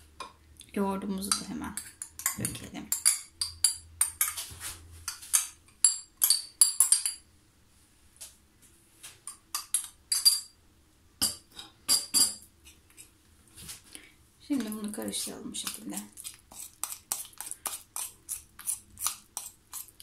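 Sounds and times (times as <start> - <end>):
metal spoon clinking against bowl: 1.2 - 4.4, 5.1 - 7.2, 9.3 - 10.6.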